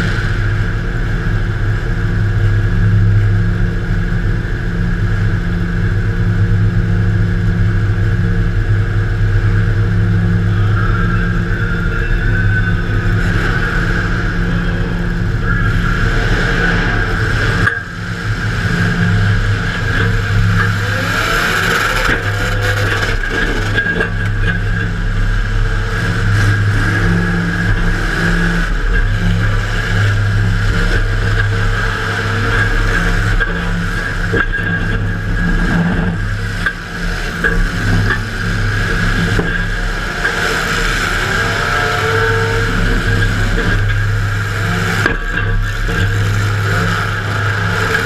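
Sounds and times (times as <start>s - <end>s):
car engine running hard: 0.0s - 48.0s
engine revving: 0.0s - 48.0s.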